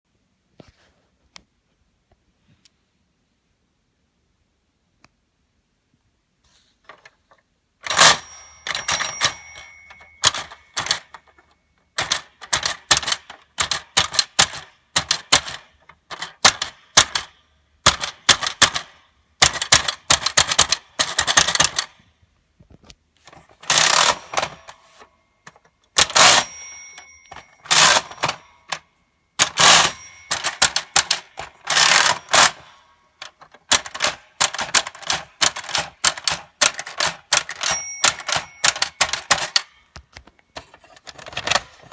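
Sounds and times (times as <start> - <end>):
toy typewriter keys clacking: 7.8 - 21.9, 23.3 - 24.8, 25.5 - 28.8, 29.4 - 40.0, 40.6 - 41.9
ringing tone: 7.9 - 10.7, 26.2 - 28.7, 37.6 - 39.0.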